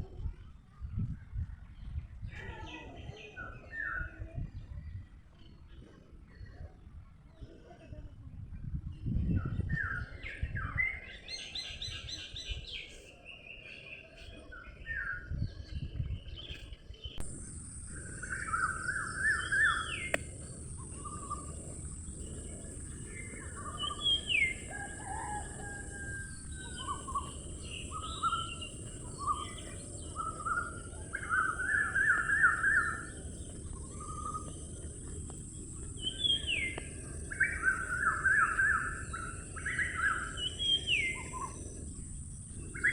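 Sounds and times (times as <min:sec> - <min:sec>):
songbirds chirping: 0:00.3 - 0:42.9
steady high hiss: 0:17.2 - 0:42.9.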